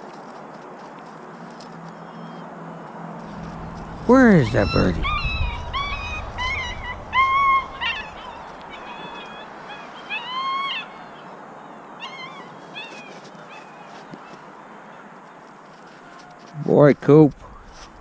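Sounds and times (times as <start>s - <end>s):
puppies whining and yelping: 2.0s - 2.5s, 3.2s - 11.2s, 12.0s - 14.1s.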